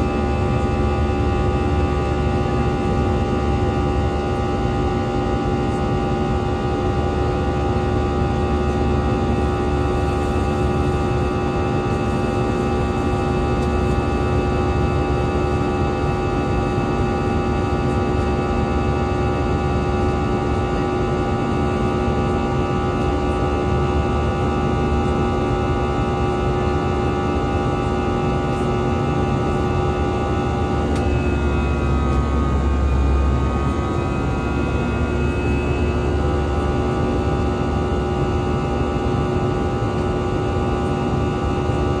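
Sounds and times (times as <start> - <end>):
engine whine: 0.0 - 42.0
jet engines droning: 0.0 - 42.0.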